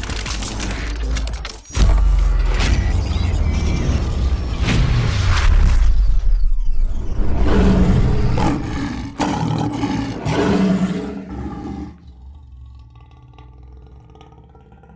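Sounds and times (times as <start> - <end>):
lion roaring: 7.0 - 14.9.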